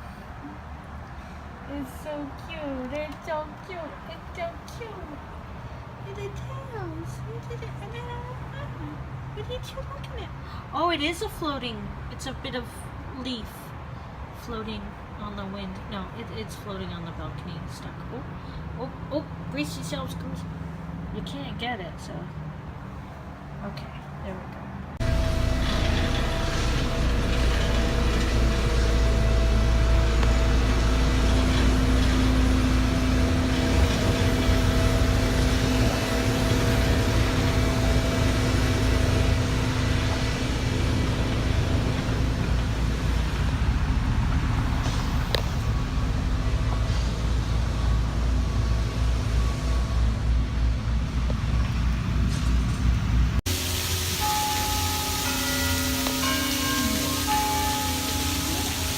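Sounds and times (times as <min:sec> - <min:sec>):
low mechanical rumble with droning hum: 0:25.0 - 0:54.2
faint ringing tones: 0:54.0 - 0:58.9.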